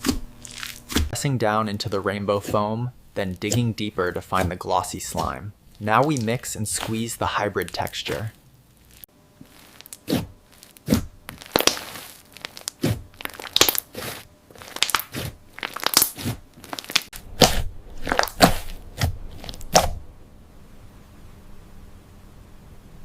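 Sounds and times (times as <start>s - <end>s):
slime crackling and popping: 0.4s - 0.9s, 5.1s - 20.0s.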